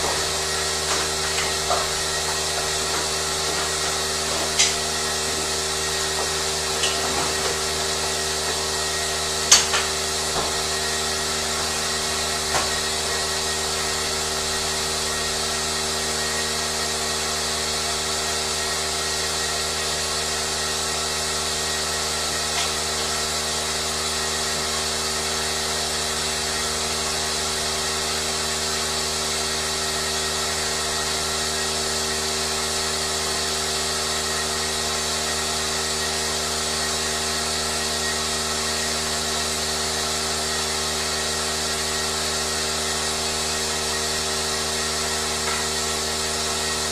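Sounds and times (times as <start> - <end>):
machinery drone: 0.0 - 16.1
sharp clicks and knocks: 4.3 - 4.8, 6.8 - 7.6.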